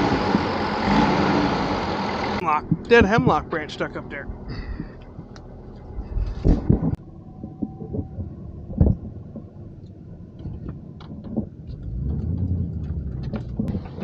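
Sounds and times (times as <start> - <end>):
vehicle engine rumbling: 0.0 - 14.0
knocks and rattles: 6.2 - 14.0.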